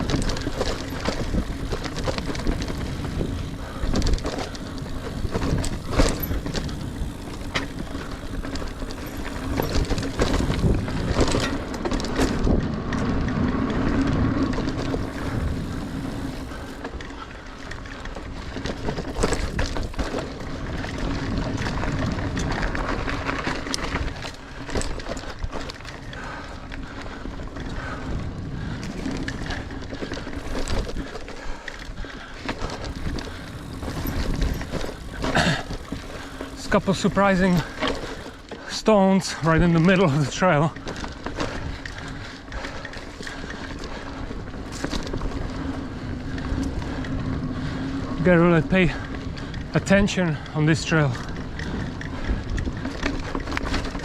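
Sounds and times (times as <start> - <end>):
wind on microphone: 0.0 - 16.8
bike rattling clicks and knocks: 0.0 - 54.0
bike tyres rolling over dirt: 0.0 - 54.0.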